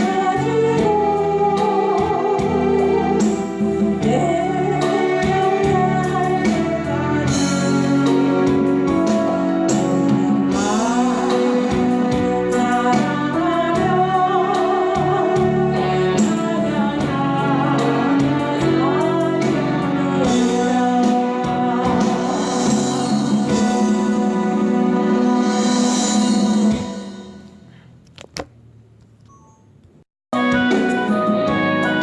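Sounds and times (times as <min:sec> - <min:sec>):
person singing: 0:00.0 - 0:27.2
guitar accompaniment: 0:30.4 - 0:32.0.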